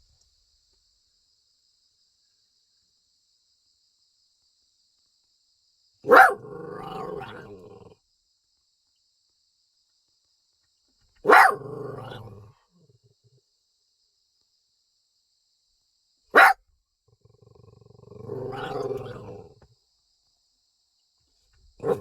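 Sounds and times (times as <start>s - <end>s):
dog barking: 6.0s - 7.8s, 11.2s - 12.5s, 16.3s - 16.6s, 18.0s - 19.5s, 21.8s - 22.0s.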